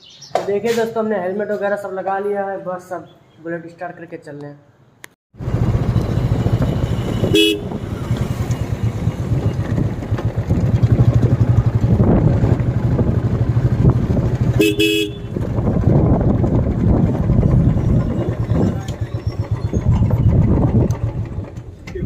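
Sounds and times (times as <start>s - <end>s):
motorcycle engine running: 5.4s - 22.0s
motorcycle horn toot: 6.6s - 8.2s, 14.5s - 15.5s.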